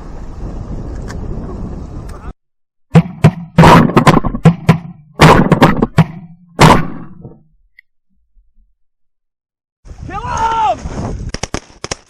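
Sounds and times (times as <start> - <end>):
shotgun fire: 3.0 - 7.2.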